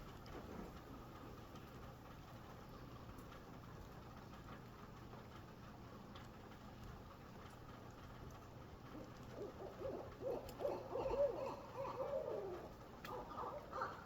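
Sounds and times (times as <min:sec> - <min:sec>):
animal hooting calls: 0:08.9 - 0:14.0.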